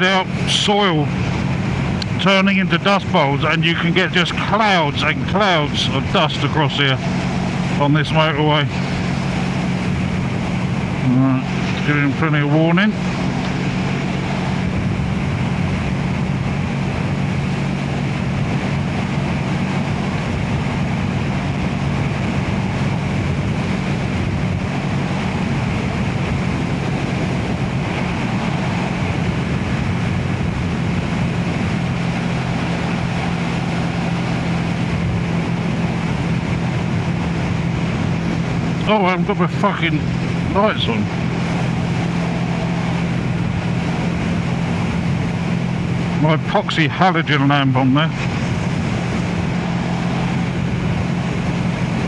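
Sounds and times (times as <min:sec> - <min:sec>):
wind noise on microphone: 0:00.0 - 0:11.9, 0:13.0 - 0:38.9, 0:39.8 - 0:46.6, 0:48.1 - 0:52.0
motorcycle engine cruising: 0:00.0 - 0:52.0.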